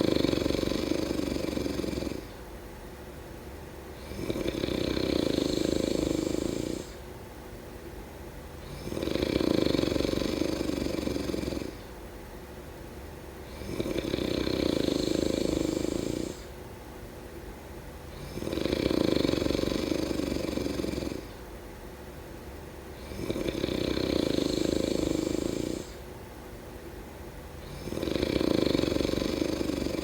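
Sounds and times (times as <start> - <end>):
quiet breathing: 0.0 - 2.4, 3.9 - 7.1, 8.6 - 12.0, 13.4 - 16.6, 22.9 - 26.1, 27.5 - 30.0
snoring: 0.0 - 2.4, 4.0 - 7.0, 8.6 - 11.9, 13.4 - 16.5, 18.1 - 21.4, 22.9 - 26.0, 27.6 - 30.0.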